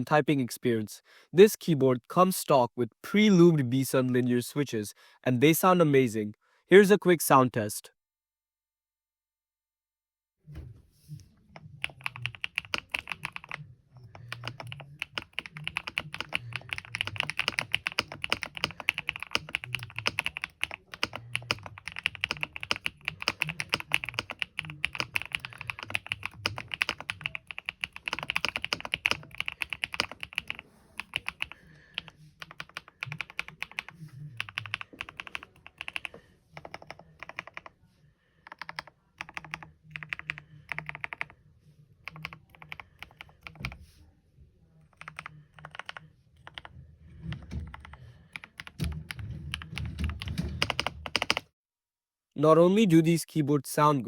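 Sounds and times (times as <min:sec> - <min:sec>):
mechanical keyboard typing: 0:11.8 - 0:37.7, 0:38.4 - 0:41.3, 0:42.0 - 0:43.8, 0:44.9 - 0:46.7, 0:47.3 - 0:51.5.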